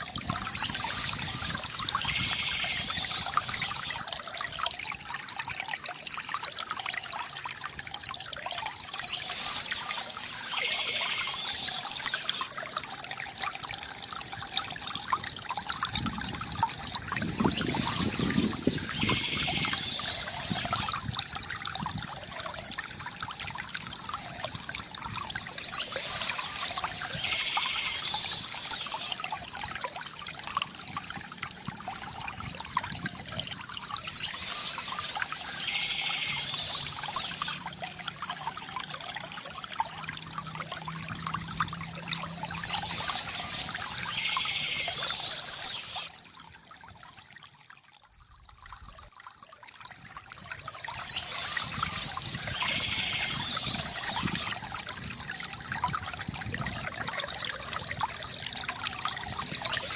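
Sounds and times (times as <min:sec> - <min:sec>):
hissy water rush: 0:00.0 - 0:04.2, 0:08.8 - 0:12.6, 0:16.1 - 0:21.2, 0:24.3 - 0:30.1, 0:33.4 - 0:38.1, 0:40.2 - 0:46.2, 0:50.8 - 0:56.2, 0:57.9 - 0:59.9
stream trickling over stones: 0:00.0 - 0:59.9.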